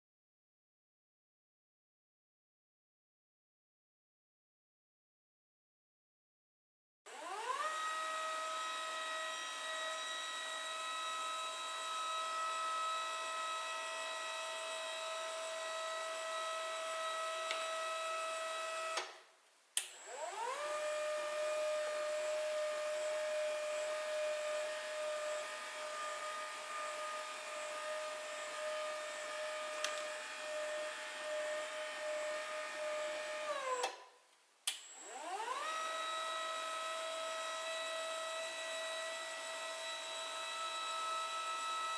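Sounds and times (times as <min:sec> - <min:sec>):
electric pump motor whining: 0:07.1 - 0:19.2, 0:19.9 - 0:34.1, 0:34.7 - 0:41.9.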